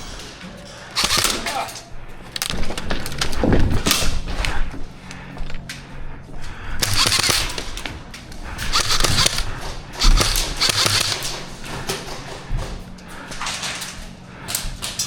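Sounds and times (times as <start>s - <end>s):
airsoft guns firing bursts: 1.0s - 1.7s, 6.8s - 7.9s, 8.6s - 11.5s.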